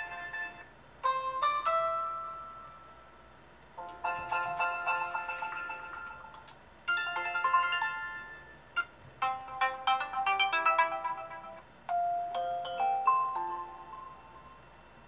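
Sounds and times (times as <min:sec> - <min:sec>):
phone ringtone chiming: 0:03.8 - 0:15.0.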